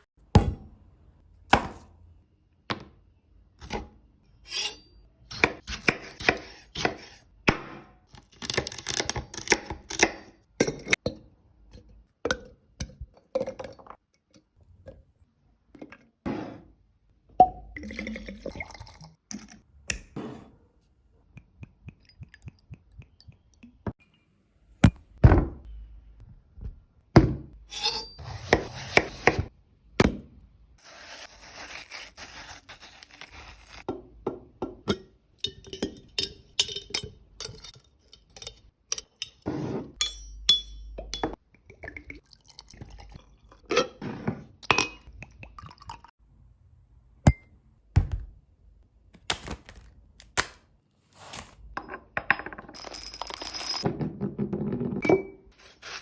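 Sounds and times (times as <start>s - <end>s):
glass and kitchenware clinking: 34.9s - 41.4s.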